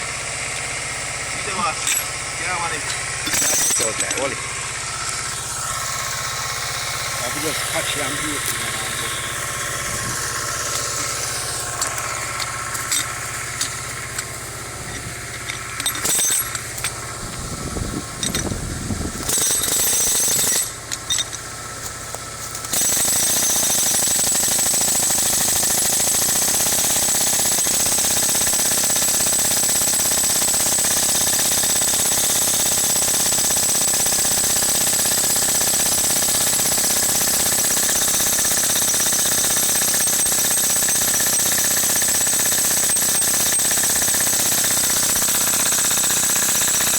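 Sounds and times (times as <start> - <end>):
engine humming: 0.0 - 22.8
jackhammer hammering: 0.0 - 46.9.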